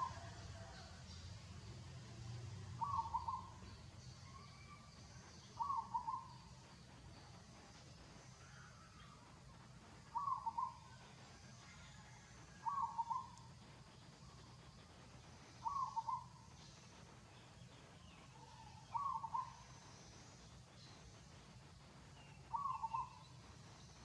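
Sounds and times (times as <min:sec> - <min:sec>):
bird hooting call: 0:02.8 - 0:03.6, 0:05.5 - 0:06.5, 0:10.1 - 0:11.0, 0:12.6 - 0:13.4, 0:15.6 - 0:16.4, 0:18.3 - 0:19.7, 0:22.5 - 0:23.3.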